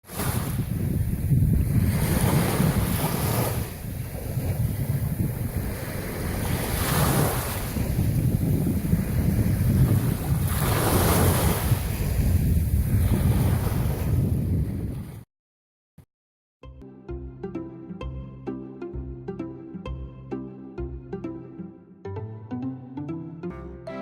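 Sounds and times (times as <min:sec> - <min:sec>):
surf washing on shore: 0:00.0 - 0:14.3
wind buffeting microphone: 0:00.1 - 0:15.2.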